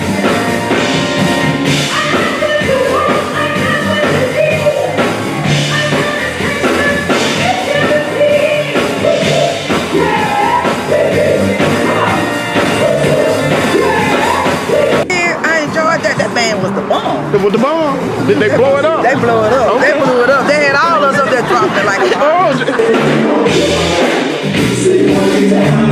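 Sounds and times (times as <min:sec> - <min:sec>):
band playing: 0:00.0 - 0:25.9
person singing: 0:01.8 - 0:15.1, 0:22.1 - 0:25.9.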